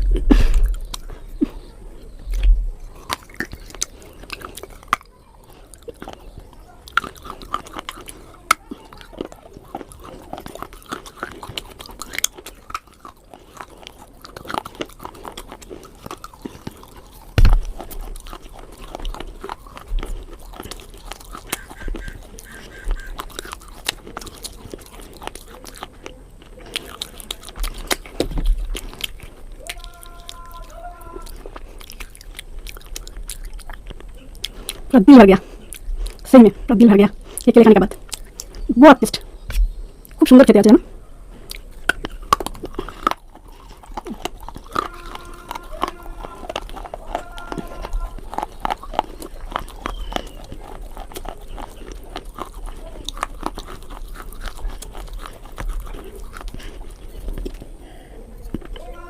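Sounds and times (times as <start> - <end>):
person chewing: 0.0 - 59.0
louder thump: 17.4 - 17.7.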